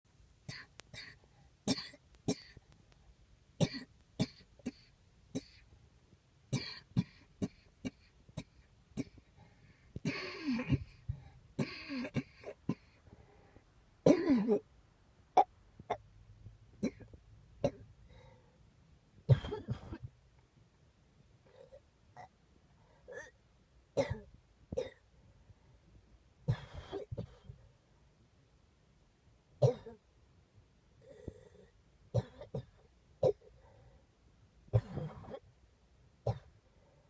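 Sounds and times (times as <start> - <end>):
rough hacking coughs: 0.5 - 2.6, 3.6 - 5.6, 6.5 - 9.2, 10.0 - 13.0, 14.1 - 14.6, 19.3 - 20.1, 24.0 - 25.0, 29.6 - 30.0, 32.2 - 33.4, 34.7 - 35.4, 36.3 - 36.5
short dry coughs: 34.7 - 35.4.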